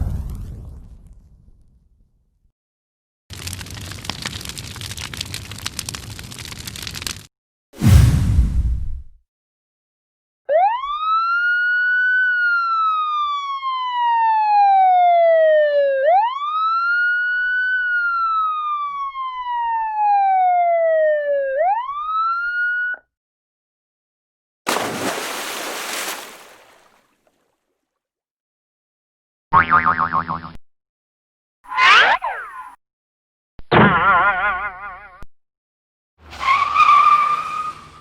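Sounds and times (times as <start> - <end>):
siren wailing: 10.5 - 23.0, 31.7 - 32.7.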